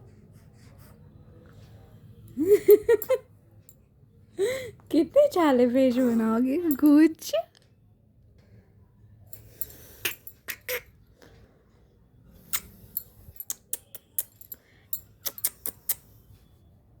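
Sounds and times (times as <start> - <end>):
sharp clicks and clinks: 6.6 - 7.1, 12.5 - 16.0.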